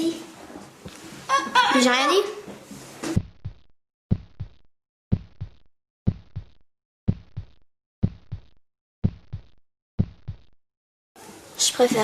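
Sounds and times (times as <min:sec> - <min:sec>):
heartbeat thuds: 0:03.2 - 0:10.6.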